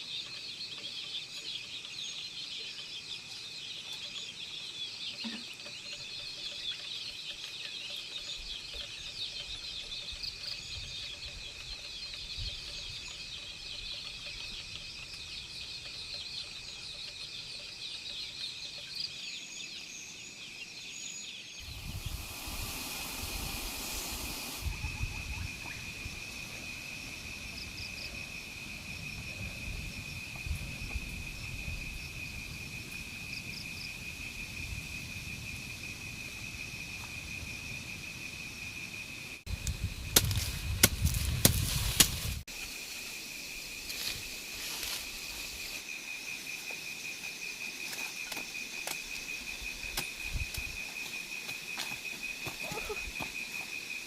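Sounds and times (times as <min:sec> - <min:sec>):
high insect drone: 0:05.2 - 0:54.0
rustling noise: 0:39.5 - 0:42.5, 0:43.8 - 0:45.9.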